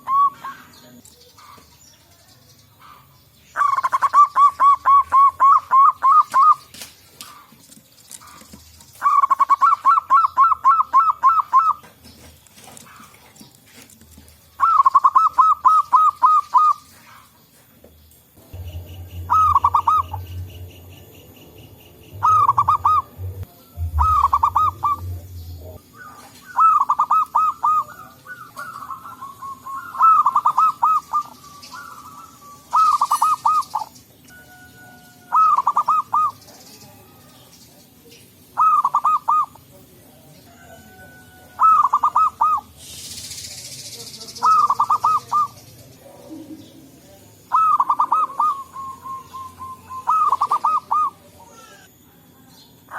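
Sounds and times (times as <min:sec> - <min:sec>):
dove cooing: 0:02.8 - 0:17.4, 0:18.5 - 0:37.2, 0:38.6 - 0:39.6, 0:40.9 - 0:42.8, 0:44.4 - 0:52.2.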